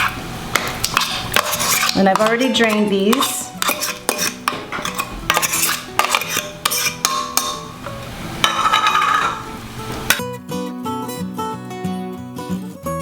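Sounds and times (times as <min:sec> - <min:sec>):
metal utensil scraping dishes: 0:00.0 - 0:10.2
acoustic guitar music: 0:00.0 - 0:13.0.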